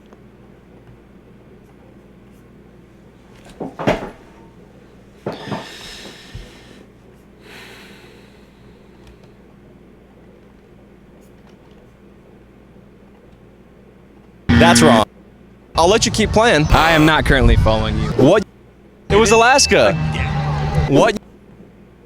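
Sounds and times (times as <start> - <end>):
steady low hum: 14.5 - 18.4, 19.0 - 21.2.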